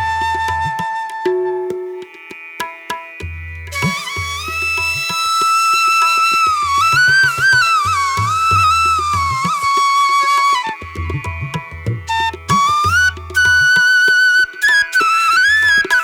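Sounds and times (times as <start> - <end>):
flute melody: 0.0 - 2.1, 3.7 - 16.0.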